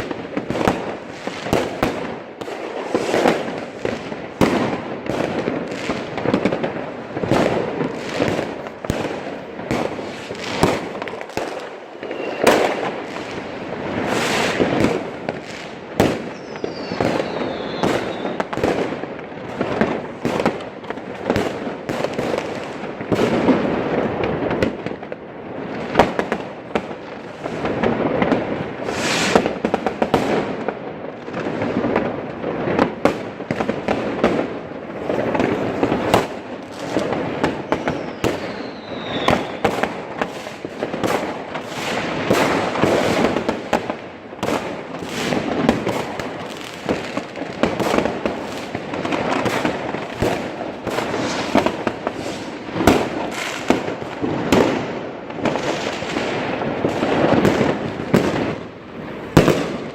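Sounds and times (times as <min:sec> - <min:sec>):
firecracker bangs and crackles: 0:00.0 - 0:59.9
falling firework whistle: 0:10.2 - 0:14.9, 0:16.0 - 0:18.7, 0:28.8 - 0:29.6, 0:36.9 - 0:40.6.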